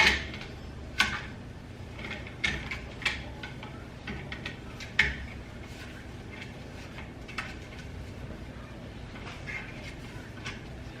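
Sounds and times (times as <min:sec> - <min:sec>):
plastic parts clicking and knocking: 0:00.0 - 0:05.4.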